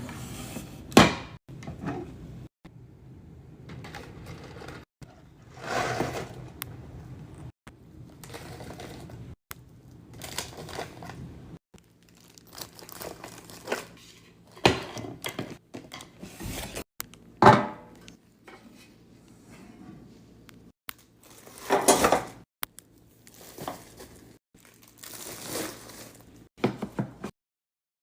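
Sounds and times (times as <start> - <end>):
packaging rustling and crinkling: 11.8 - 14.0, 23.2 - 26.5.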